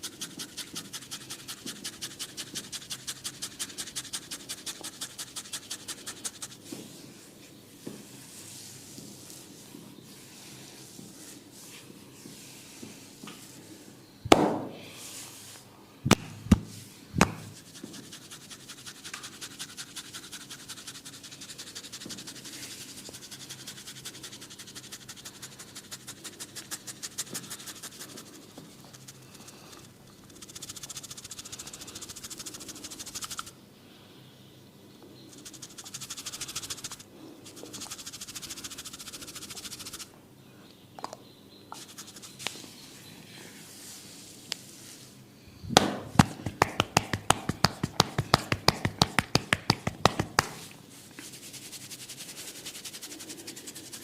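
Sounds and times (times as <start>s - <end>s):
scratching and rubbing hair: 0.0s - 7.3s, 16.7s - 33.5s, 35.3s - 40.1s, 41.8s - 42.7s, 45.8s - 54.0s
hair crackling: 45.8s - 50.7s.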